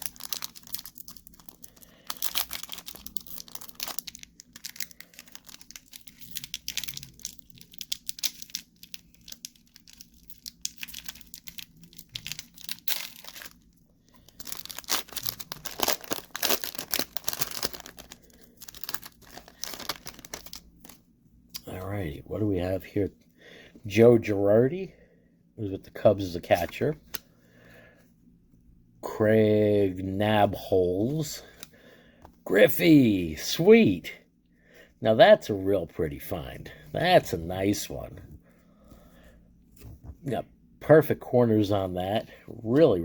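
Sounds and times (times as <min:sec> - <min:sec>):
wrapper tearing and crinkling: 0:00.0 - 0:21.0.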